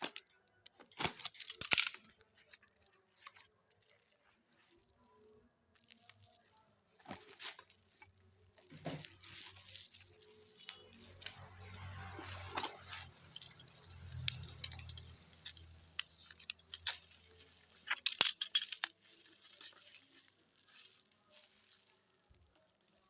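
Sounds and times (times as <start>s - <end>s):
packaging rustling: 5.8s - 23.0s.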